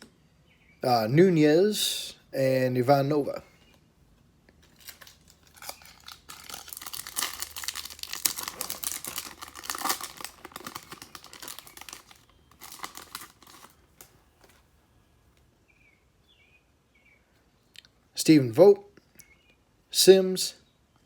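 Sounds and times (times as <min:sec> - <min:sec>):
foil wrapper tearing and crinkling: 0:04.6 - 0:14.6.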